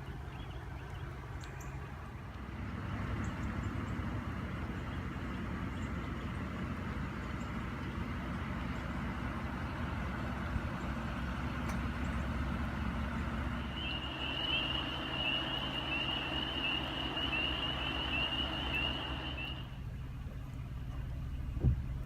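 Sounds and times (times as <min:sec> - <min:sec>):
vehicle engine low hum: 0:00.0 - 0:22.0.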